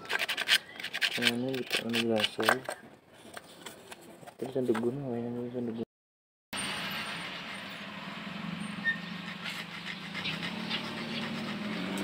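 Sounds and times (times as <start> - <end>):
car engine running: 7.9 - 12.0.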